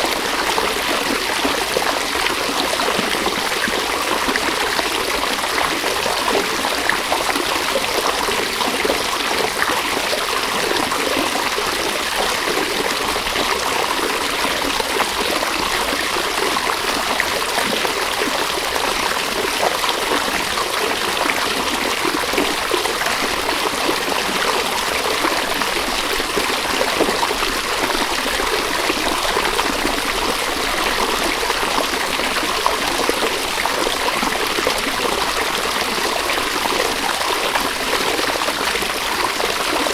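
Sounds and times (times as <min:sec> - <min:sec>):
river water running over stones: 0:00.0 - 0:39.9.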